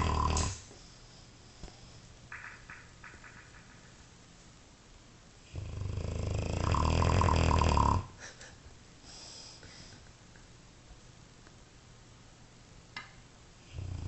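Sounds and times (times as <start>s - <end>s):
dog snoring loudly: 0.0s - 0.6s, 5.5s - 8.2s, 13.7s - 14.0s.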